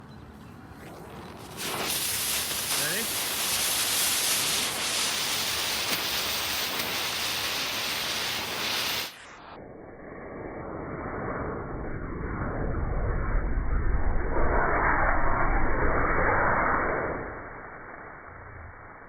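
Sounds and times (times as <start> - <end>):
firework fuse hissing: 1.0 - 9.5
muffled low rumble: 9.4 - 19.0.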